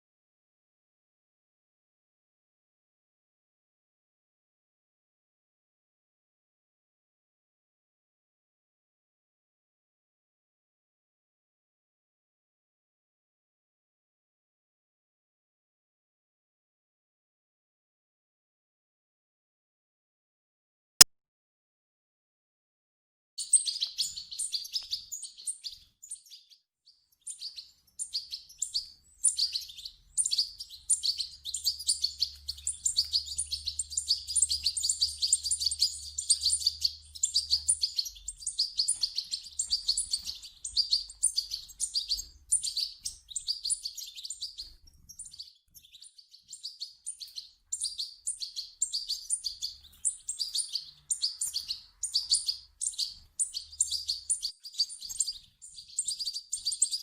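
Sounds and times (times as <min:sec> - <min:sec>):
bird chicks chirping: 0:23.4 - 0:57.0.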